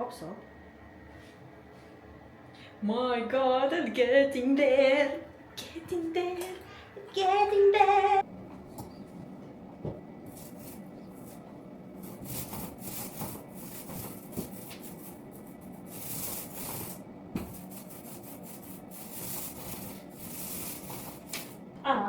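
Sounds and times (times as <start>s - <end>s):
hand rubbing across a surface: 10.3s - 11.4s, 12.0s - 21.6s.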